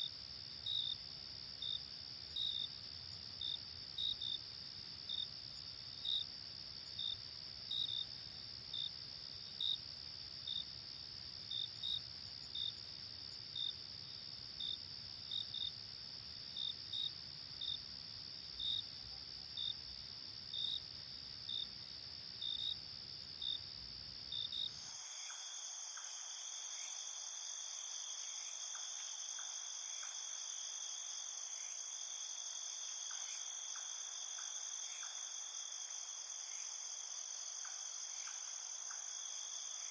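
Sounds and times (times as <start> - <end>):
cricket chirps: 0.0 - 39.9
crickets trilling: 21.5 - 39.9
higher insect trilling chorus: 24.6 - 39.9.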